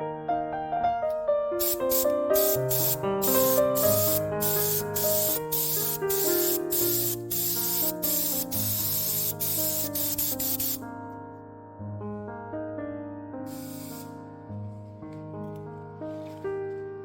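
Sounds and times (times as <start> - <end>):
background music with piano: 0.0 - 17.0
spray gun hissing: 1.6 - 10.8, 13.5 - 14.2.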